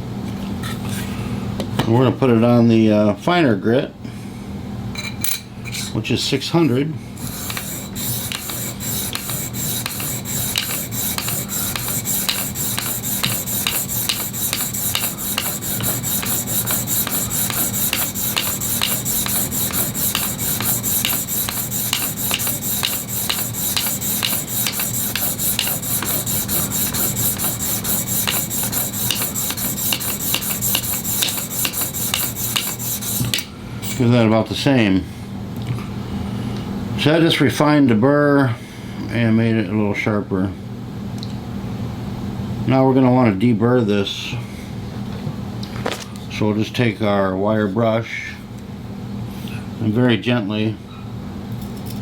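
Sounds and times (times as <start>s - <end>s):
blade rasping on sharpening plate: 7.2s - 33.4s.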